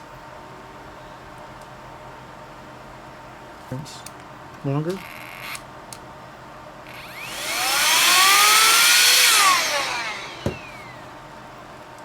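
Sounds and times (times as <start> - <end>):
rising and falling whistle: 7.3 - 11.0.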